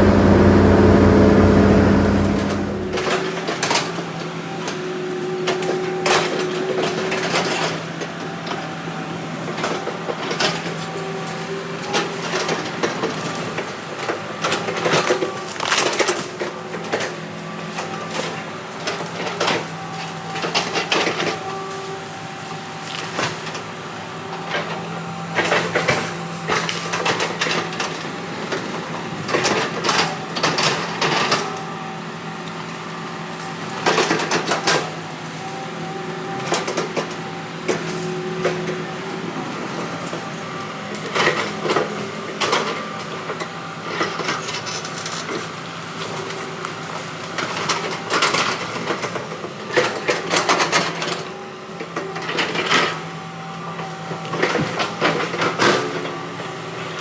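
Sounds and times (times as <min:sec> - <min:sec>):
machine clanking: 0:00.0 - 0:03.2
diesel engine running: 0:00.0 - 0:03.4.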